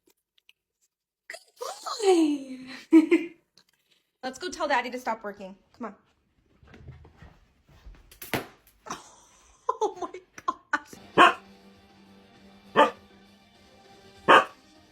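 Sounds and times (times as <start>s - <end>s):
music with held tones: 11.0s - 14.9s
dog barking: 11.2s - 11.4s, 12.7s - 13.0s, 14.2s - 14.6s
dog yelping: 11.2s - 11.4s, 12.8s - 13.0s, 14.3s - 14.6s.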